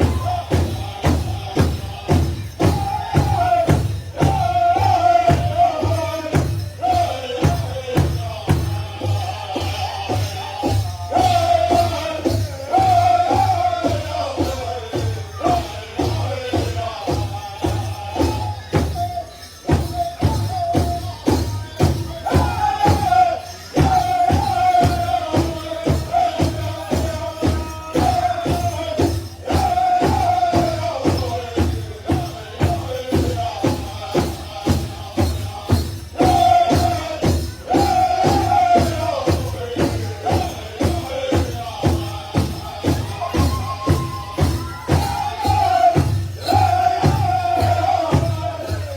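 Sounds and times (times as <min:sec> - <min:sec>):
group singing high phrases: 0:00.0 - 0:48.9
large drum steady beat: 0:00.0 - 0:48.9.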